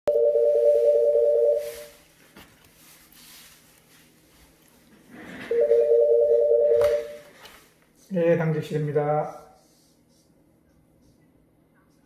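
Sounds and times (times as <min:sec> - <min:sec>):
telephone ringback tone: 0:00.1 - 0:02.0, 0:05.4 - 0:07.2.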